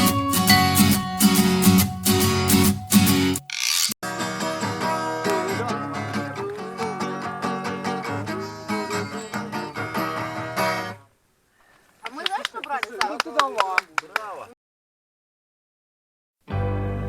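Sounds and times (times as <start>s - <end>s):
strummed acoustic guitar: 0.0s - 11.0s.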